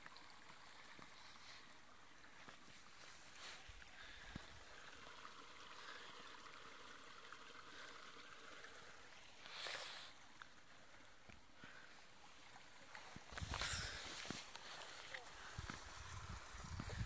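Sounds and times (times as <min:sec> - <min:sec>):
flowing stream water: 0:00.0 - 0:17.0.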